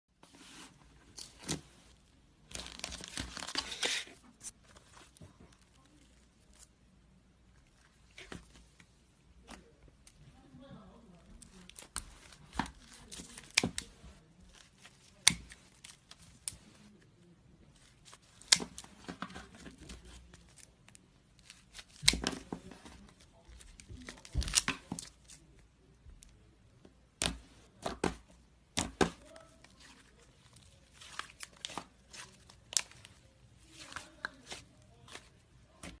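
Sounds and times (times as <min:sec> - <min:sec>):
soft slime crackling: 0:00.3 - 0:36.0
scissors snipping slime: 0:15.2 - 0:15.6.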